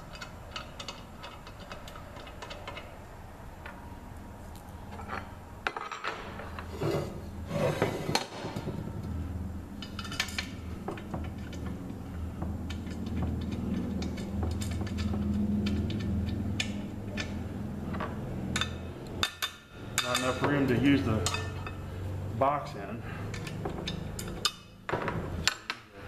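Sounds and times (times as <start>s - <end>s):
metal clinking and clanking: 0.0s - 3.0s, 9.8s - 21.8s
sharp clicks and knocks: 9.8s - 20.6s.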